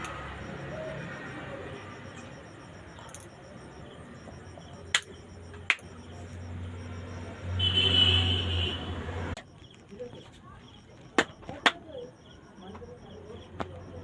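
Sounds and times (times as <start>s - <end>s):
joints cracking: 0.0s - 6.0s
steady low hum: 0.0s - 7.6s.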